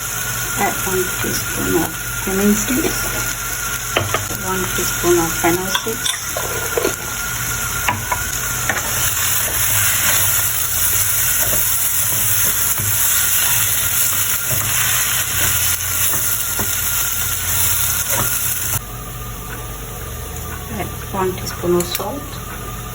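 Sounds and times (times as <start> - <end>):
food sizzling in hot oil: 0.0 - 18.8.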